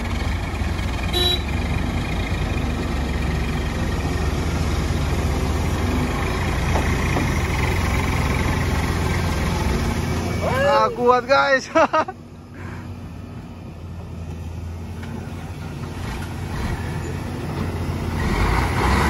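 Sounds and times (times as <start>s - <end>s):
diesel machinery engine rumbling: 0.0s - 19.0s.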